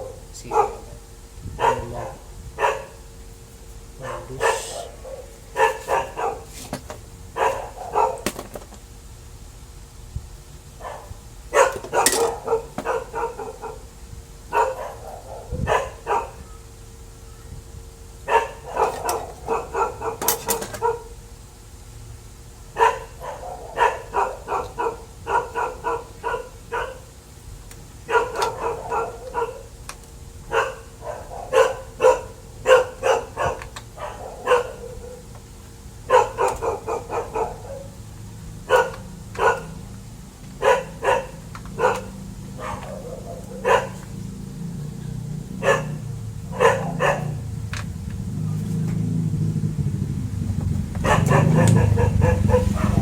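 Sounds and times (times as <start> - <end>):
dog barking: 0.0 - 3.1, 4.0 - 6.6, 7.3 - 8.4, 10.8 - 16.7, 18.2 - 21.2, 22.7 - 27.2, 28.0 - 29.8, 30.4 - 35.4, 36.0 - 47.6, 51.0 - 53.0.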